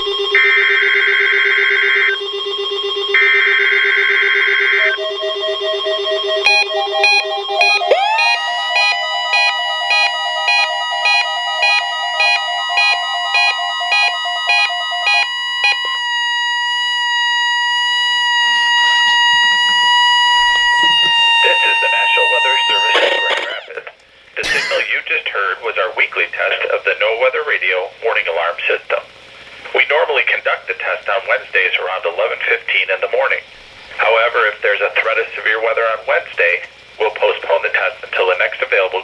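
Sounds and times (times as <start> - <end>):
steady high warning alarm tone: 0.0 - 23.6, 24.4 - 25.0
electronic alarm beeping: 0.1 - 14.6, 24.4 - 25.0.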